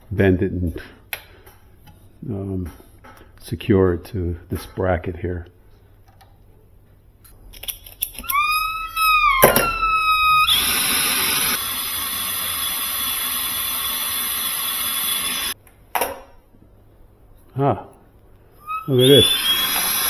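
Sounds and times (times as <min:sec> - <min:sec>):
gas whistling: 0:08.2 - 0:15.6, 0:18.6 - 0:20.0.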